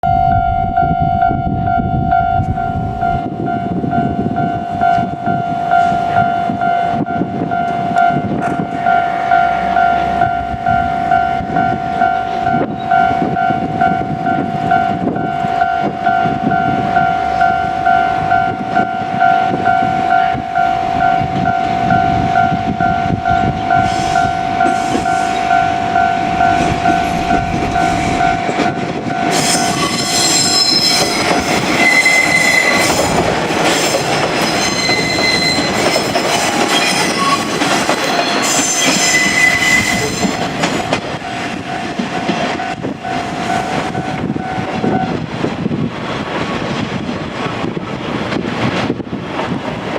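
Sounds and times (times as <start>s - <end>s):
level-crossing alarm dinging: 0.0s - 45.2s
diesel railcar rumbling past: 0.0s - 49.9s
high-pitched wheel squeal: 29.2s - 33.2s, 33.8s - 40.5s.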